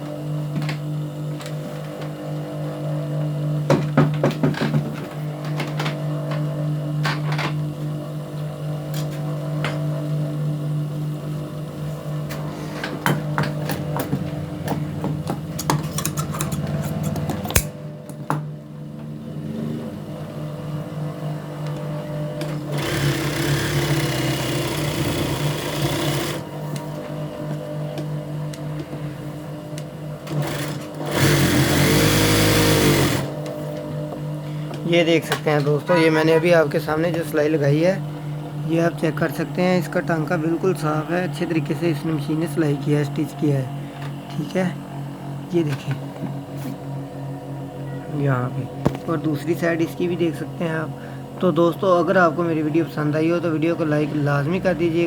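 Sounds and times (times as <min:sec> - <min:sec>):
sewing machine running: 0:22.1 - 0:26.6, 0:30.2 - 0:33.4.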